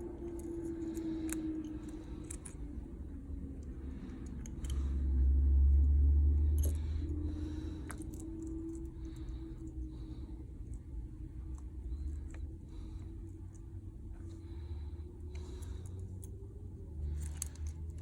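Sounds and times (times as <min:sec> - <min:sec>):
low hum: 0:00.0 - 0:18.0
low rumble: 0:00.0 - 0:18.0.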